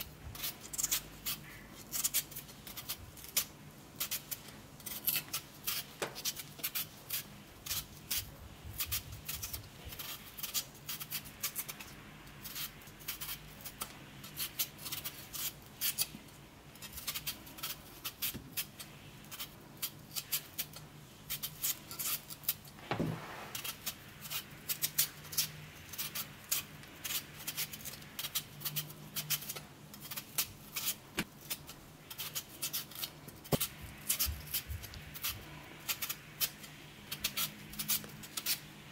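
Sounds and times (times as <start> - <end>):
potato scraping strokes: 0.0 - 38.9.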